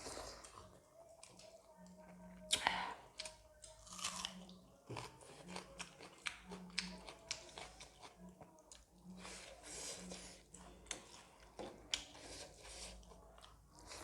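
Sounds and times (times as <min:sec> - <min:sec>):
wet chewing with smacks: 0:03.2 - 0:09.2.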